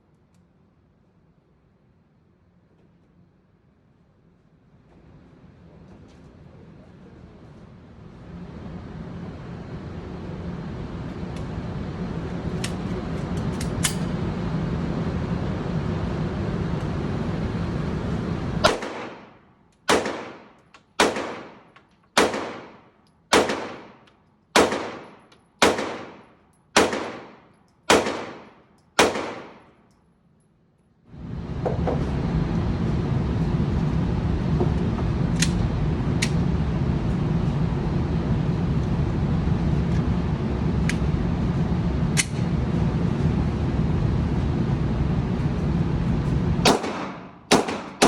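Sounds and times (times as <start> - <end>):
gunshots: 18.6 - 24.0, 24.6 - 29.7, 46.6 - 48.0
steady noise: 31.1 - 48.0.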